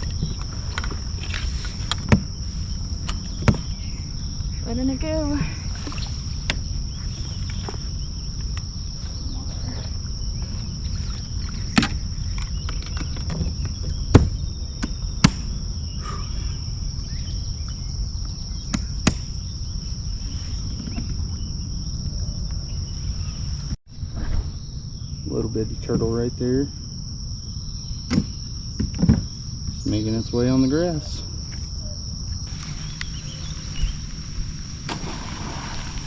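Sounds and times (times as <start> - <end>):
high-pitched insect chorus: 0.0 - 36.0
low rumble of wind or water: 0.0 - 36.0
sharp knocks: 14.1 - 15.5, 18.7 - 19.4.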